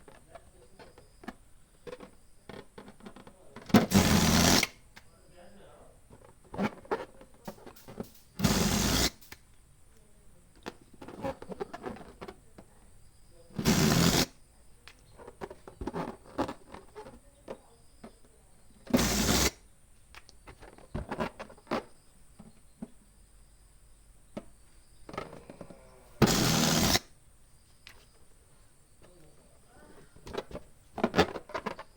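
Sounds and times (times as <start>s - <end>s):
rubbery handling noises: 0.0s - 9.5s, 10.4s - 23.2s, 24.2s - 31.9s
balloon pump air bursts: 3.7s - 4.9s, 6.5s - 9.4s, 13.5s - 14.4s, 18.8s - 19.6s, 25.1s - 27.2s
small clicks: 7.4s - 8.4s.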